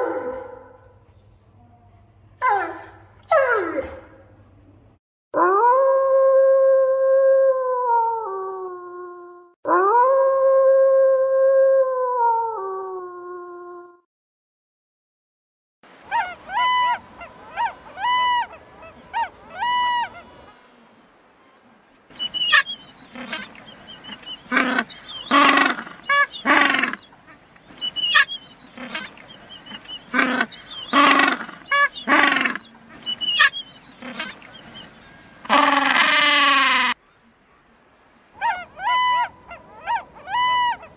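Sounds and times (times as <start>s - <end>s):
animal honking calls: 16.1s - 20.6s, 22.1s - 34.8s, 35.4s - 37.0s.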